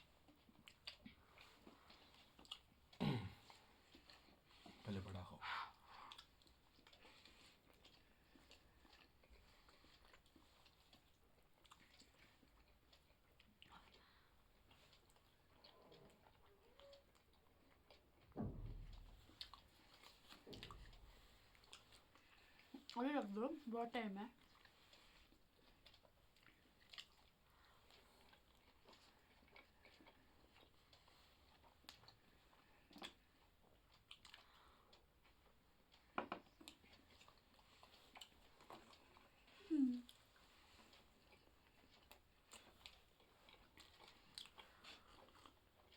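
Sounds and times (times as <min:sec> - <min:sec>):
people chewing: 0:00.0 - 0:45.9
soft low thump: 0:18.3 - 0:19.5.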